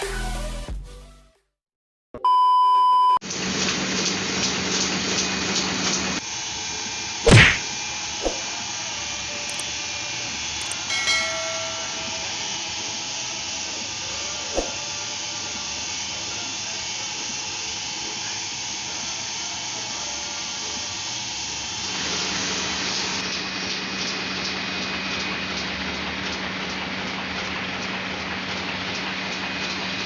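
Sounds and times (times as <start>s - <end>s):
sharp click: 10.6s - 10.9s.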